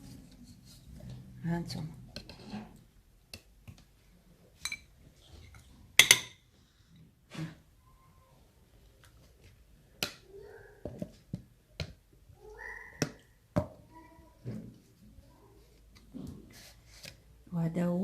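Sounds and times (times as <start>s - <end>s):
dishes and utensils clinking: 4.6s - 6.4s.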